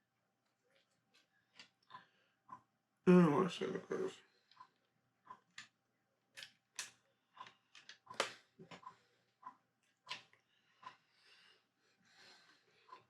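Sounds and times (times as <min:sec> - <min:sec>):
plastic bricks clicking together: 0:06.4 - 0:08.4.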